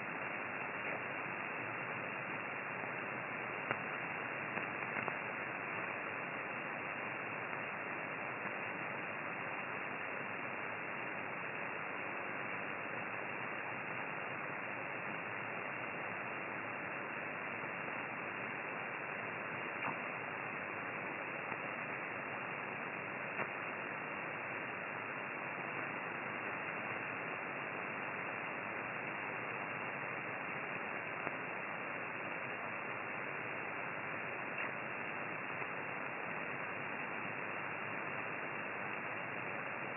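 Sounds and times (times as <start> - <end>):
radio receiver hiss: 0.0 - 39.9
faint clicks: 3.5 - 6.0, 19.5 - 22.0, 23.0 - 23.8, 34.5 - 36.5.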